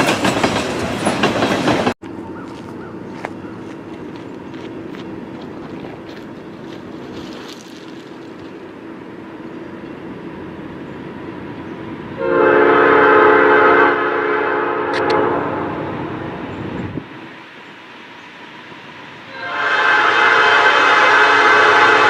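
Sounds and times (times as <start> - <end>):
locomotive rumble: 0.0 - 22.0
locomotive air horn blast: 12.2 - 15.8, 19.3 - 22.0.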